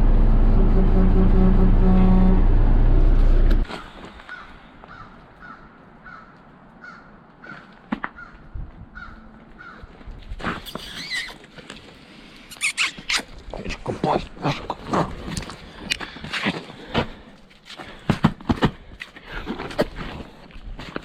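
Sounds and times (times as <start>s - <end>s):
truck engine running: 0.0s - 3.7s.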